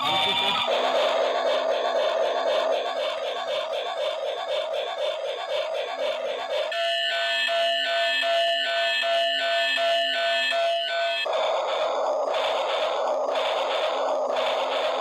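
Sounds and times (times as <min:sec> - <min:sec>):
toy train beeping tone: 0:00.0 - 0:02.9, 0:06.7 - 0:11.3
electronic chugging sound: 0:00.0 - 0:07.8, 0:11.3 - 0:15.0.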